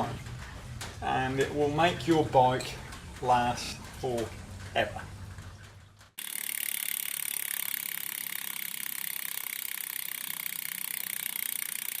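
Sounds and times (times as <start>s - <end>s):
bike freewheel ratcheting: 6.2s - 12.0s.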